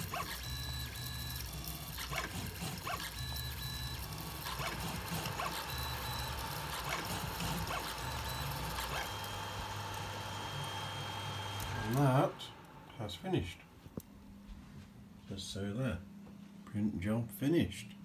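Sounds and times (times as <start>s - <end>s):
stepper motors whining: 0.0s - 13.2s.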